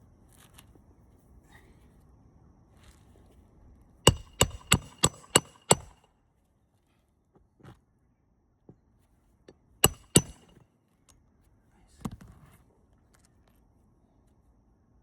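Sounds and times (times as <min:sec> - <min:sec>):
hammer blows on metal: 0:04.1 - 0:06.0, 0:09.8 - 0:10.6.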